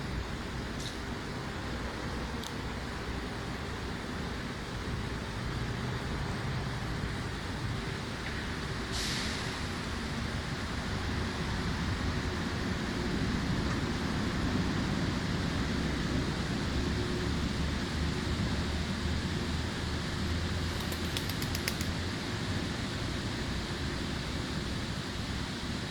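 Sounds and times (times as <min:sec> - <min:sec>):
faint high clicks: 0:20.2 - 0:22.0.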